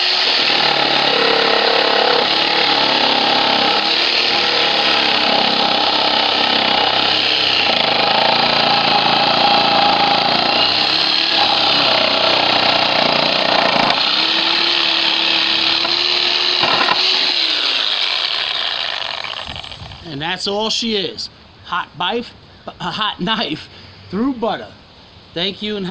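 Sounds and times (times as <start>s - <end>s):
reciprocating saw cutting wood: 0.0s - 20.2s.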